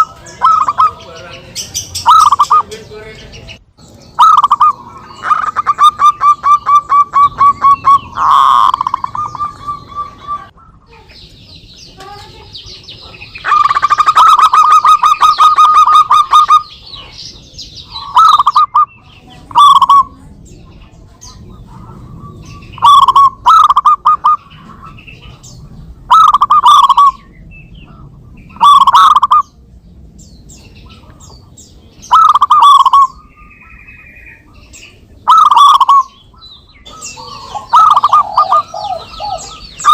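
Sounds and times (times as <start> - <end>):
high bird chirping: 0.0 - 39.9
doves purring and cooing: 4.2 - 10.8, 17.9 - 27.3, 27.9 - 29.6, 35.2 - 36.2, 36.8 - 39.9.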